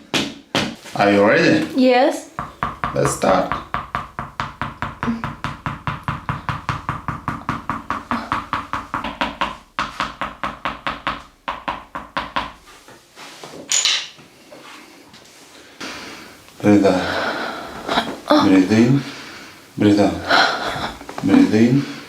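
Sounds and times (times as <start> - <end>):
rapid percussive tapping on body: 2.4 - 12.7.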